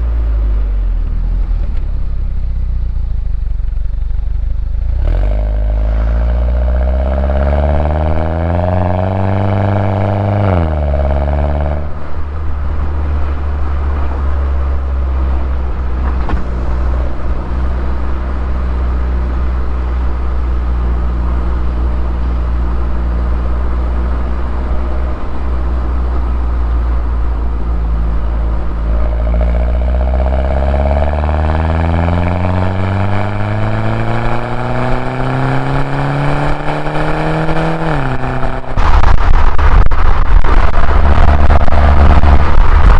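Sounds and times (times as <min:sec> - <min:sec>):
car engine accelerating and cruising: 0:00.0 - 0:42.9.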